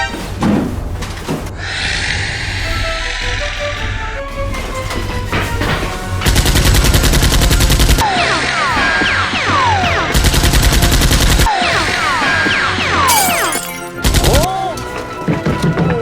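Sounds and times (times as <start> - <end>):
background music: 1.6 - 16.0.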